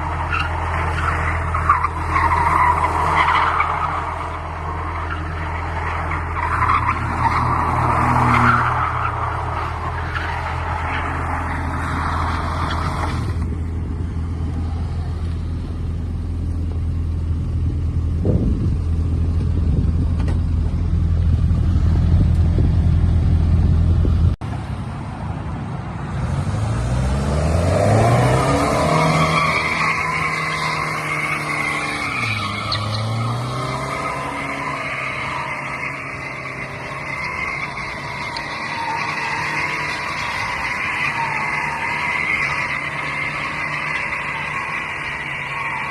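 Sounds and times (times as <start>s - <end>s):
tyres skidding: 0.0s - 45.9s
car engine revving: 26.2s - 45.9s.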